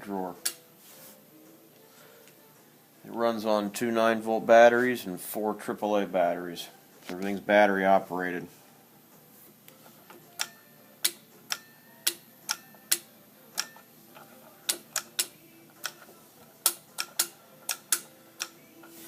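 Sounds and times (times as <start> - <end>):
toggle switches clicking: 10.4 - 13.8, 14.7 - 16.0, 16.6 - 18.6.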